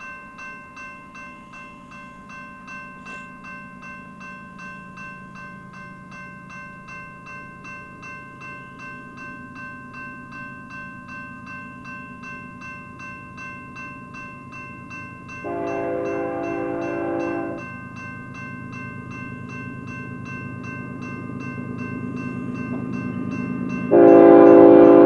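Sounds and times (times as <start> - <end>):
railroad crossing bell ringing: 0.0 - 25.0
freight train rumbling: 12.4 - 25.0
locomotive horn blast: 15.4 - 17.6, 23.9 - 25.0.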